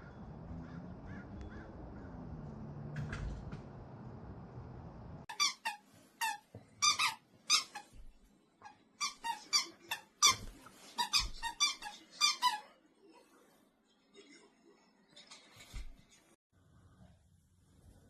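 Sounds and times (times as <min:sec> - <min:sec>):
dog toy squeaking: 0:05.3 - 0:08.0, 0:09.0 - 0:12.6.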